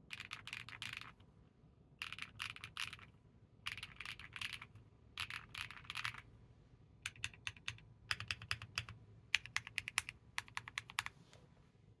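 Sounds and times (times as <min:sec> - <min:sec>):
mechanical keyboard typing: 0:00.1 - 0:01.2, 0:02.0 - 0:03.1, 0:03.7 - 0:06.2, 0:07.1 - 0:11.1.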